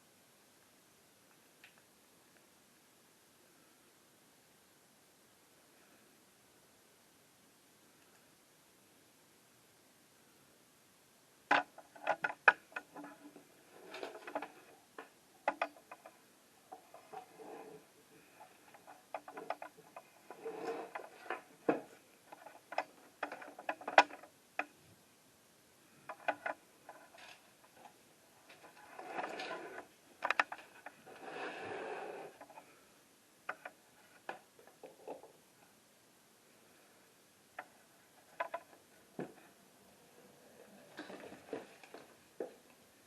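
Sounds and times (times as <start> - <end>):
clicks and knocks: 11.5 - 24.8, 26.1 - 31.0.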